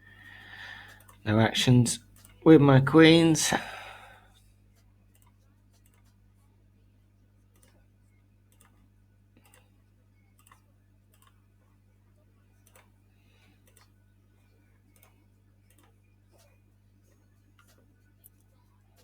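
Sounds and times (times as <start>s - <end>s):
low electrical hum: 0.0s - 19.0s
computer mouse clicks: 2.1s - 2.4s, 5.1s - 6.2s, 7.5s - 7.9s, 8.5s - 9.7s, 10.3s - 11.4s, 12.6s - 12.9s, 13.6s - 14.0s, 14.9s - 16.6s, 17.6s - 19.0s.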